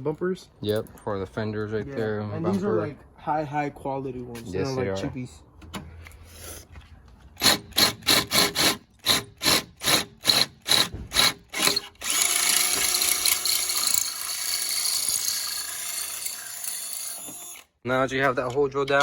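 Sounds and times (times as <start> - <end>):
power drill boring through aluminum: 7.4 - 17.8.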